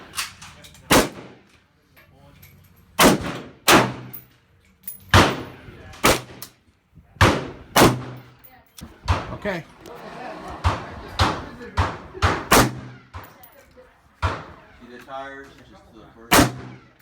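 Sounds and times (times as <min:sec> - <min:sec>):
gunshots with echo: 0:07.2 - 0:08.3, 0:10.6 - 0:13.3, 0:16.3 - 0:17.0.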